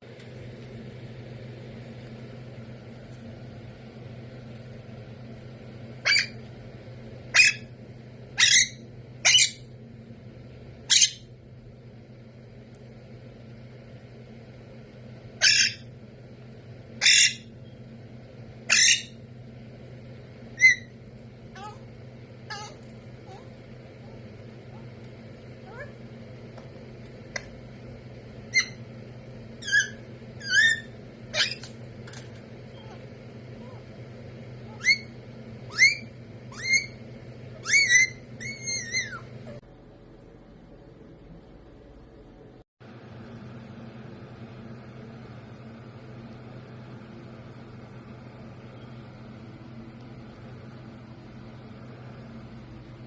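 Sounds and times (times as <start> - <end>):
steady low hum: 0.0 - 53.0
parrot squawking: 6.0 - 6.4, 7.3 - 7.7, 8.4 - 9.7, 10.9 - 11.3, 15.4 - 15.9, 17.0 - 17.5, 18.7 - 19.2, 20.6 - 20.9, 21.5 - 21.8, 22.5 - 23.5, 25.7 - 25.9, 28.5 - 28.8, 29.6 - 31.7, 34.7 - 37.0, 37.6 - 39.6.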